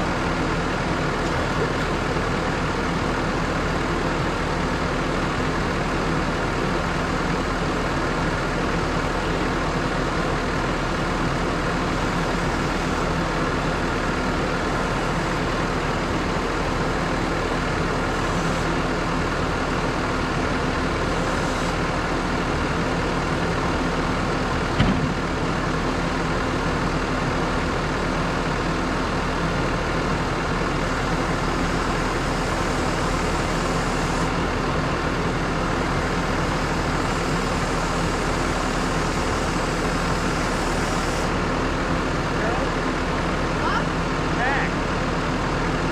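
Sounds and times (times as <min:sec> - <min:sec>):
tractor engine droning: 0:00.0 - 0:45.9.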